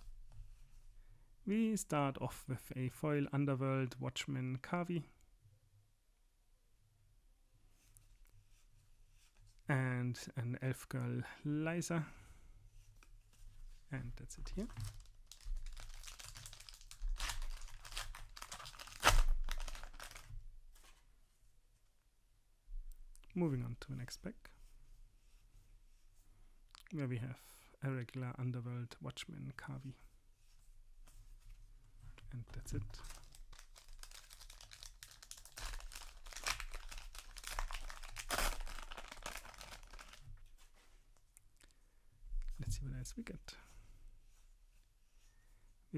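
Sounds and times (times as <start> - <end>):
foil wrapper crinkling and tearing: 14.6 - 20.3, 33.0 - 40.2.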